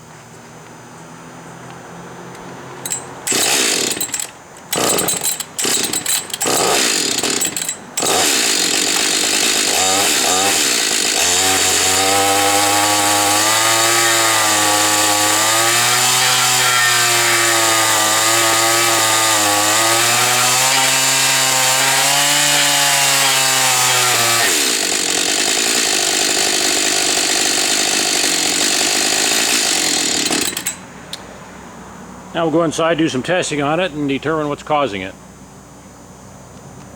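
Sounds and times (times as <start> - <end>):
chainsaw engine running: 2.8 - 30.9.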